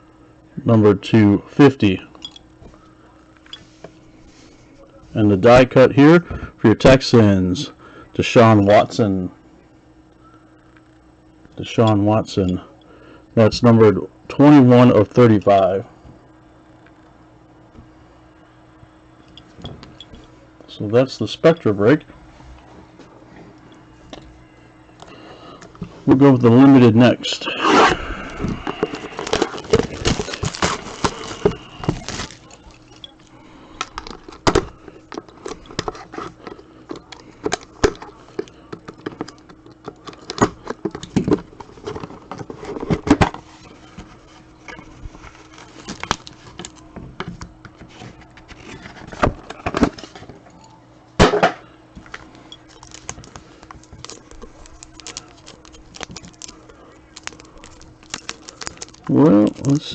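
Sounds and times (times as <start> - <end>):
card boxes and packaging handled: 27.4 - 59.9.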